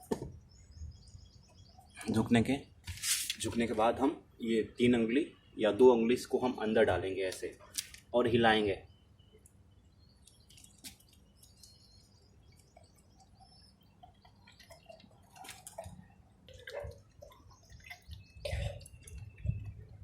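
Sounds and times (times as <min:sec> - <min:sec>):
water dripping and splashing: 0:12.4 - 0:20.0.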